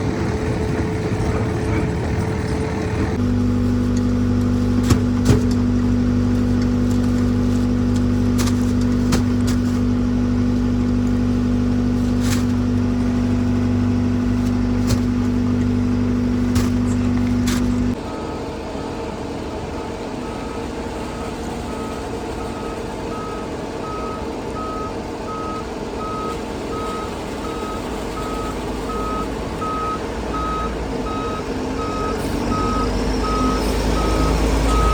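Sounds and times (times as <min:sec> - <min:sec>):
diesel engine running: 0:00.0 - 0:34.9
quieter engine running: 0:00.0 - 0:34.9
reversing alarm beeping: 0:17.3 - 0:34.9.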